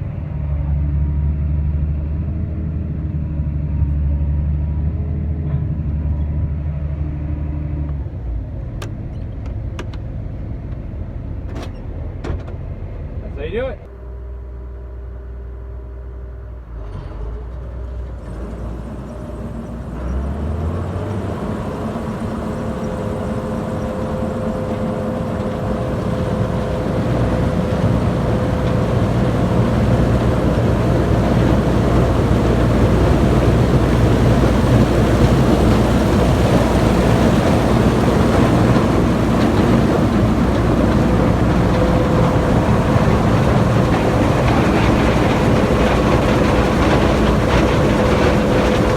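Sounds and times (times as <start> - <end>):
heavy machinery engine running: 0.0 - 48.9
rushing mechanical noise: 18.2 - 48.9.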